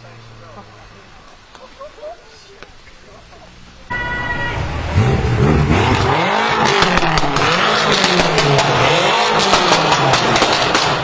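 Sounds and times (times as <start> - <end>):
exhaust crackles and pops: 1.2 - 4.0, 4.6 - 11.0
car engine revving: 2.4 - 11.0.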